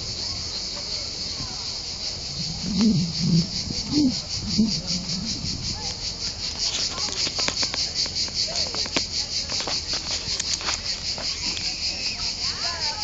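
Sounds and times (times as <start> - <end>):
crickets chirping: 0.0 - 13.0
faint clicks: 6.6 - 11.8.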